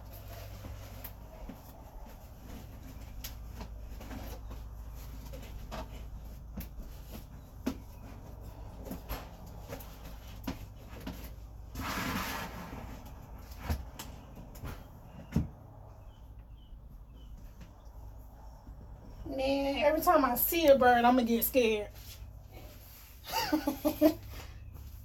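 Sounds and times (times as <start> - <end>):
rustling scrape: 0.0 - 13.9.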